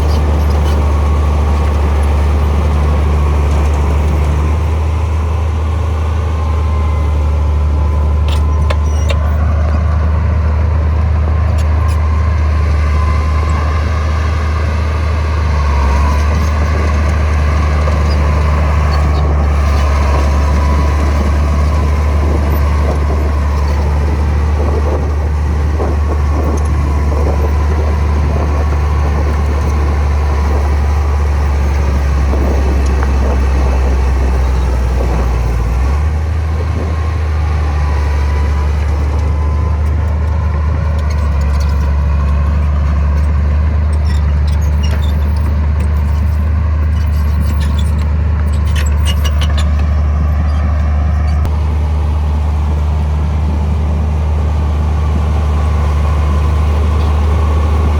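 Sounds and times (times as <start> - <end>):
bulldozer diesel engine running: 0.0 - 57.9
light clicks and clanks: 39.2 - 51.5.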